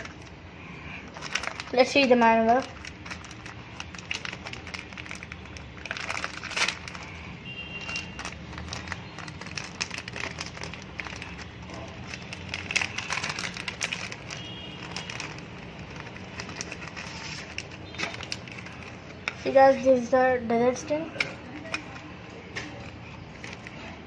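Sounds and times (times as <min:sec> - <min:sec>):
packaging and paper rustling: 0:00.0 - 0:00.4, 0:01.0 - 0:24.0
plastic parts clicking: 0:21.2 - 0:23.7.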